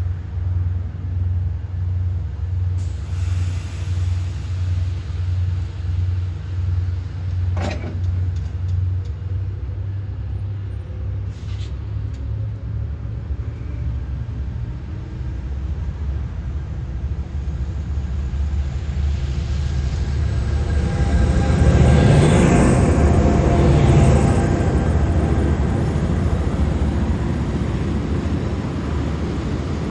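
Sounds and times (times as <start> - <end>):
train rumbling: 0.0 - 29.9
air hiss: 2.8 - 5.6.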